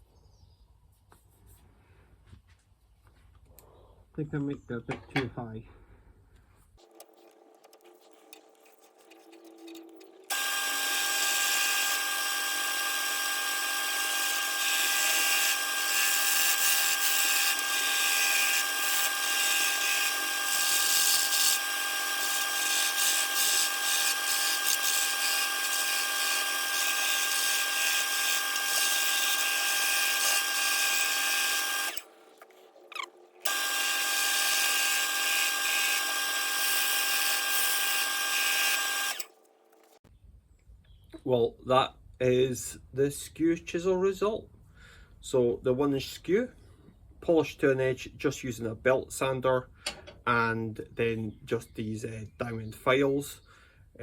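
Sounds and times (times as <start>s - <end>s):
wood lathe motor whining: 10.0s - 39.4s
chisel cutting wood hissing: 10.3s - 32.1s, 33.4s - 39.3s.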